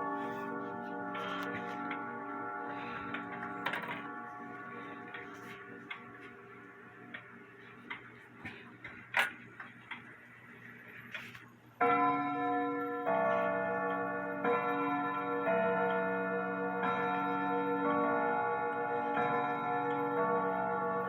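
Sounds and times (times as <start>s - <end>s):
clock chime rods struck: 0.0s - 6.6s, 11.8s - 21.0s.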